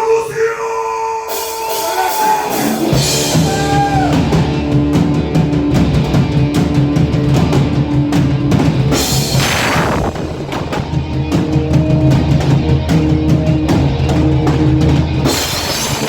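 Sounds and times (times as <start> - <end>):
rock band playing: 1.3 - 16.0
cymbals: 15.2 - 16.0.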